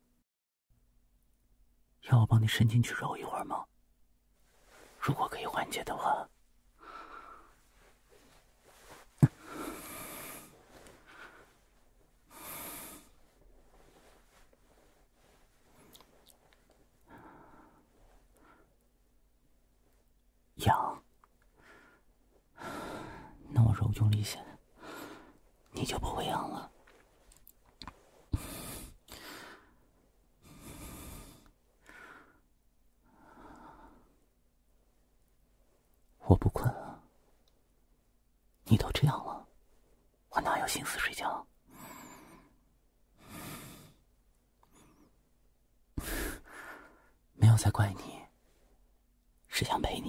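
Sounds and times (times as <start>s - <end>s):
man breathing: 6.7s - 18.8s, 21.5s - 23.5s, 24.6s - 25.6s, 28.2s - 34.2s, 43.2s - 44.0s, 46.0s - 47.2s.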